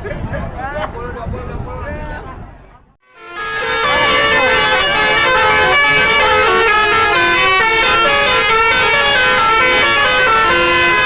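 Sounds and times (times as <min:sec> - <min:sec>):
musical air horn playing tune: 0:03.1 - 0:11.0.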